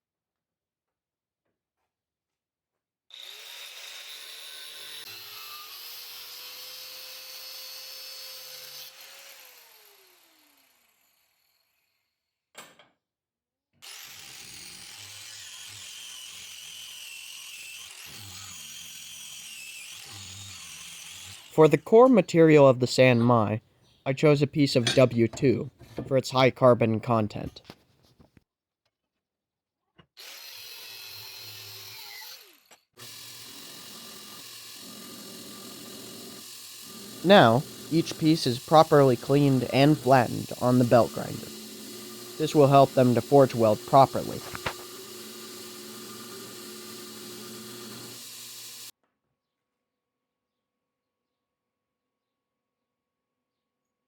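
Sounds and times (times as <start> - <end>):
power grinder whining: 3.1 - 11.2, 13.8 - 21.6, 30.2 - 48.9.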